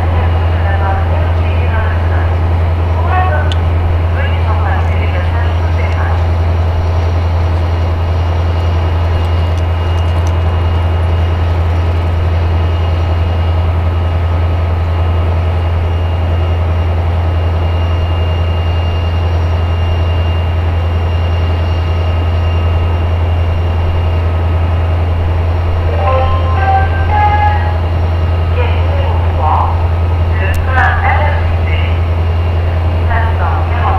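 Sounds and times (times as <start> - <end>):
diesel locomotive engine humming: 0.0 - 33.9.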